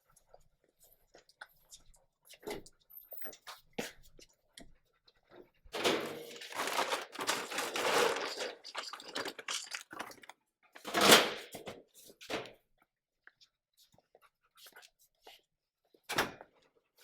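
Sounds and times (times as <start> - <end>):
kibble rattling: 5.8 - 10.3
dogs crunching dry food: 5.8 - 11.2
loud clatter: 6.3 - 8.4.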